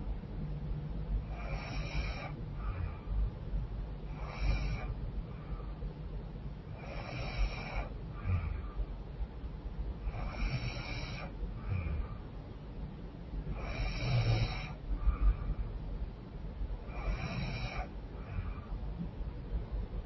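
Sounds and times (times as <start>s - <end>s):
woman snoring through congested nose: 1.3s - 3.0s, 4.2s - 5.0s, 6.8s - 8.6s, 10.1s - 12.1s, 13.6s - 14.8s, 16.9s - 18.6s.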